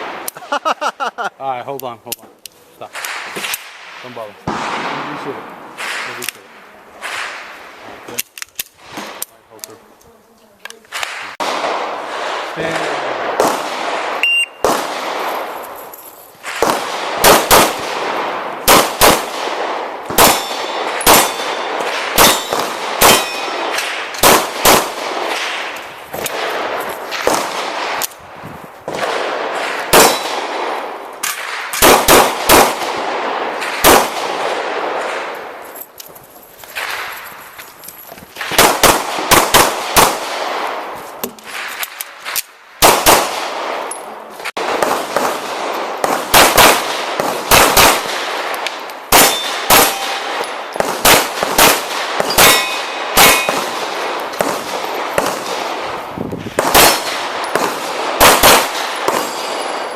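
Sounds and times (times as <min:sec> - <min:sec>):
pistol shots: 0:02.9 - 0:07.6, 0:10.9 - 0:15.6, 0:16.4 - 0:28.2, 0:28.8 - 0:35.6, 0:38.4 - 0:59.9
shot timer beep: 0:14.2 - 0:14.6
steel targets clanging: 0:52.2 - 0:53.7.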